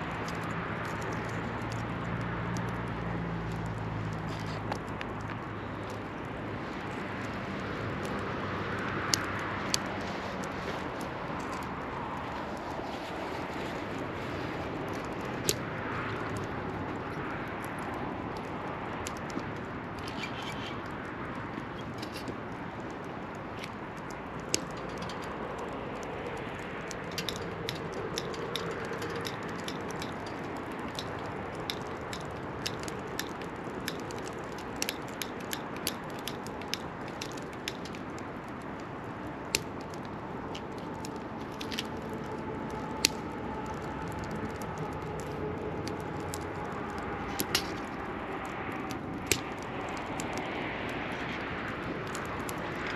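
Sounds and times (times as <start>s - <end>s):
steady rushing hiss: 0.0s - 52.9s
wood fire crackling and popping: 0.0s - 52.9s.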